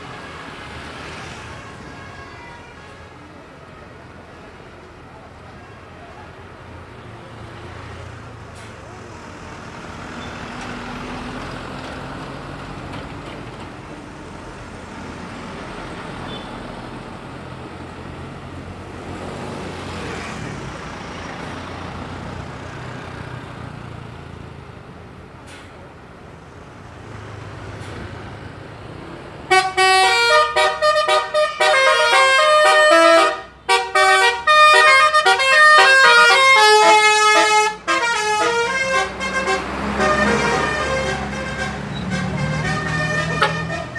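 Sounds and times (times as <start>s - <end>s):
bus engines running: 0.0s - 43.9s
road traffic: 0.0s - 43.9s
multi-tone air horn tune: 29.5s - 43.9s.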